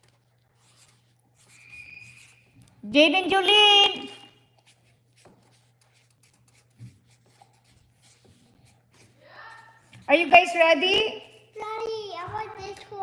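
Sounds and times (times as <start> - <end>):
pen scratching on paper: 0.0 - 2.6, 4.6 - 9.2.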